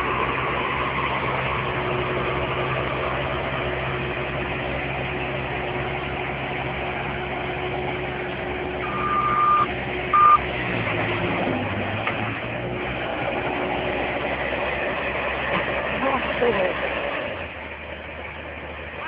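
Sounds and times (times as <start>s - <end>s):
machine engine running: 0.0s - 17.9s
backup alarm beeping: 8.8s - 10.4s.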